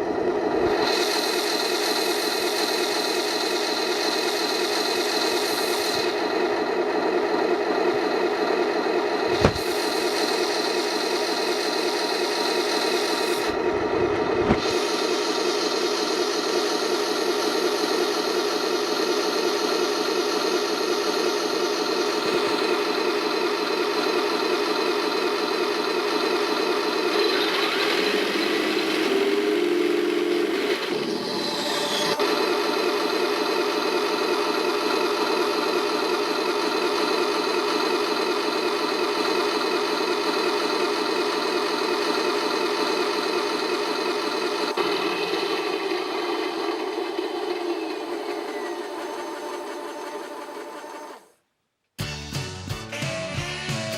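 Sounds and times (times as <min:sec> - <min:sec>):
synthesized engine sound: 0:00.0 - 0:51.2
falling electronic whine: 0:26.9 - 0:32.7.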